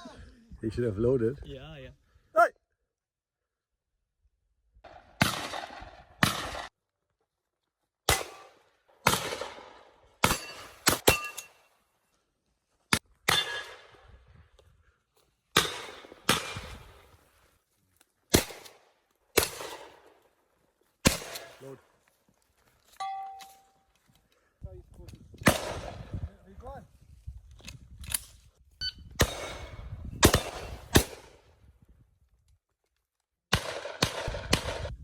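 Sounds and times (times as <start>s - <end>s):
shotgun shots: 4.9s - 6.7s, 8.1s - 11.4s, 15.6s - 17.0s, 18.3s - 18.8s, 19.4s - 20.0s, 21.0s - 21.6s, 25.4s - 26.1s, 29.2s - 31.4s, 33.5s - 34.9s.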